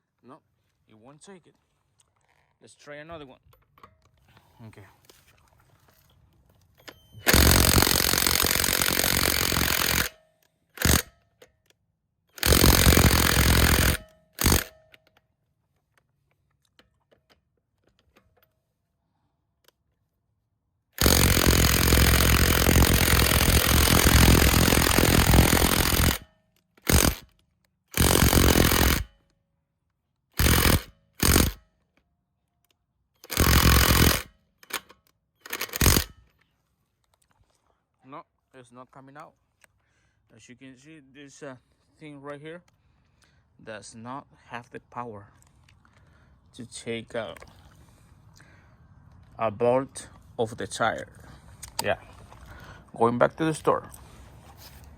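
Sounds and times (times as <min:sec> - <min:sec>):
impact wrench hammering lug nut: 0:06.9 - 0:11.6, 0:12.3 - 0:15.1, 0:21.0 - 0:29.2, 0:30.4 - 0:31.7, 0:33.2 - 0:36.2.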